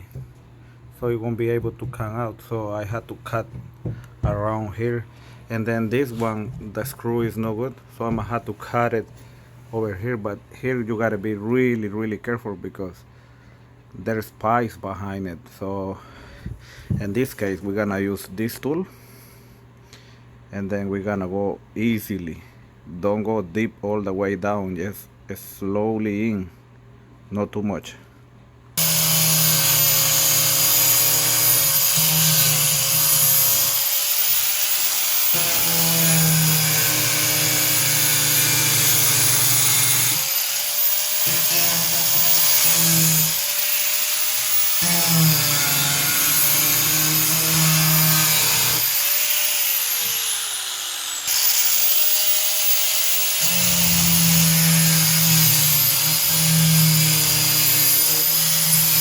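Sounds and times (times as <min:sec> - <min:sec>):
grinding hiss of cutting: 0:28.8 - 0:59.0
power tool motor running: 0:28.8 - 0:59.0.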